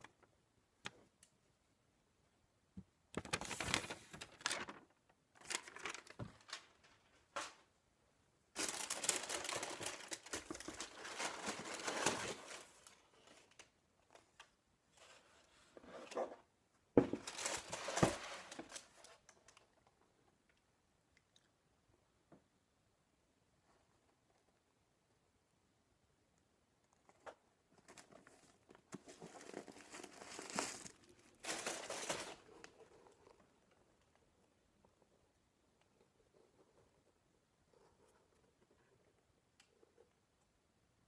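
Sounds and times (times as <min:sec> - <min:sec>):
shoe packaging crinkling: 0:08.6 - 0:12.8, 0:17.2 - 0:18.8, 0:29.1 - 0:32.5.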